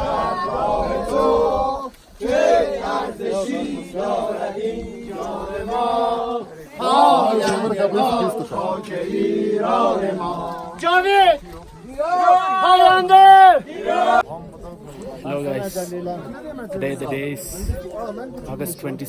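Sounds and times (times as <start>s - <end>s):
men singing a chant: 0.0s - 11.4s.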